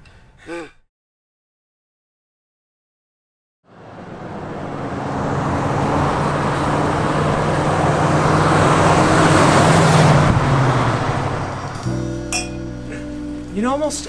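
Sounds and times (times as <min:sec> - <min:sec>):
road vehicle noise: 0:03.7 - 0:14.0.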